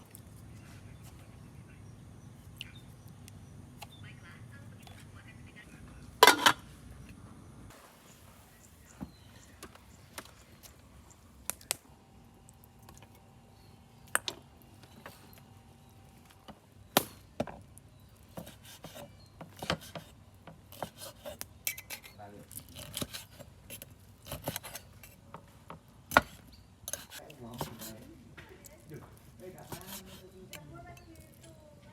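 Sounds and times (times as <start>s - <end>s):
kitchen utensils clicking: 6.2s - 6.6s.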